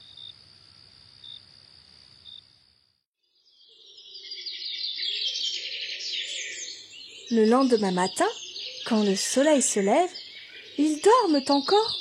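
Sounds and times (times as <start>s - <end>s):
crickets trilling and chirping: 0.0s - 2.9s, 3.6s - 12.0s
birdsong chorus: 3.4s - 12.0s.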